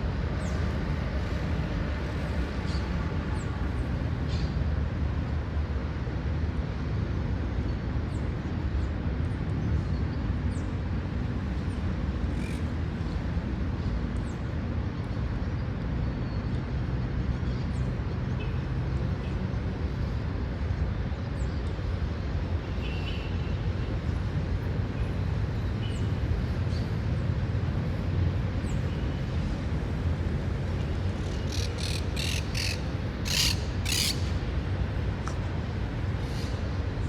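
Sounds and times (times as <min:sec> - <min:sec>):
low rumble of traffic or wind: 0:00.0 - 0:37.0.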